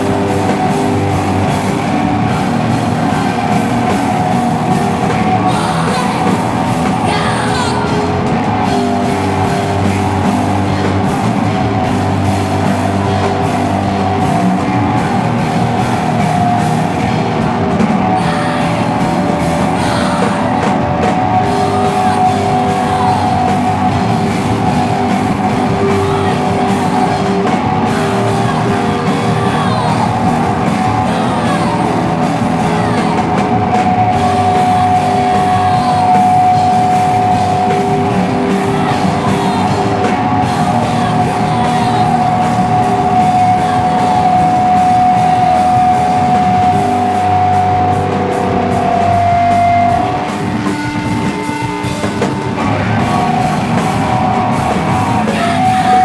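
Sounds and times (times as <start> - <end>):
noise rock band playing live: 0.0 - 56.0
person yelling vocals: 5.3 - 8.1, 52.7 - 56.0.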